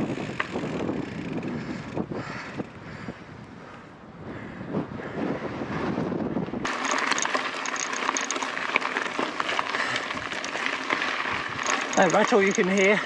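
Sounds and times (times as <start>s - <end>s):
cable rattling against bike frame: 0.0s - 2.8s, 6.6s - 13.0s
wind rumble on microphone: 0.0s - 7.4s, 8.3s - 13.0s
tyre and trail noise: 0.0s - 13.0s.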